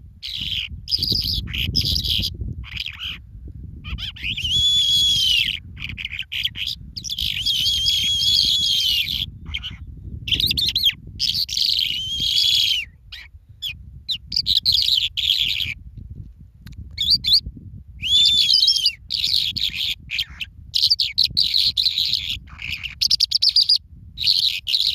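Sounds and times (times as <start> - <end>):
birds chirping and calling: 0.2 - 15.8, 17.0 - 24.9.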